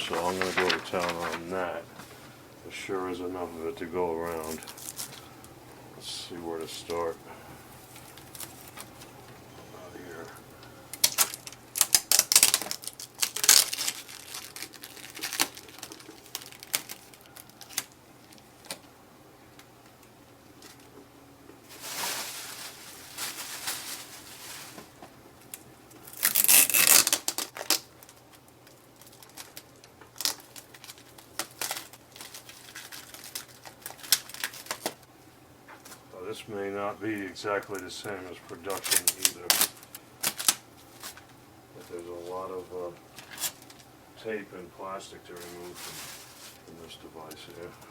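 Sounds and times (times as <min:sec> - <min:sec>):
plastic wrap crinkling: 0:00.0 - 0:02.2, 0:03.6 - 0:05.6, 0:06.4 - 0:09.2, 0:10.0 - 0:18.9, 0:21.6 - 0:35.1, 0:37.1 - 0:43.9, 0:44.9 - 0:47.9
packing tape peeling: 0:10.9 - 0:18.8, 0:25.5 - 0:35.0, 0:38.6 - 0:41.2, 0:43.2 - 0:43.8.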